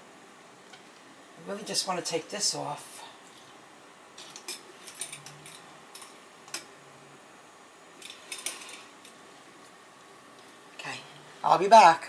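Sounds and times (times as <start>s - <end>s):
small metal parts clicking: 4.2s - 6.7s, 8.0s - 9.2s.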